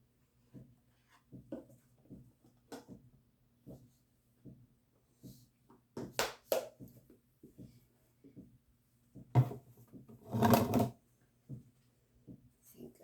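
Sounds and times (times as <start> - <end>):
kitchen containers clicking and knocking: 10.2 - 10.9
scrape and clatter: 10.2 - 11.0.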